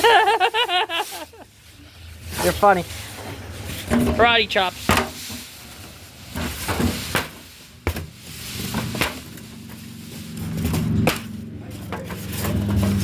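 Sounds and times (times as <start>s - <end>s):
cardboard knocks and scrapes: 6.3s - 9.4s.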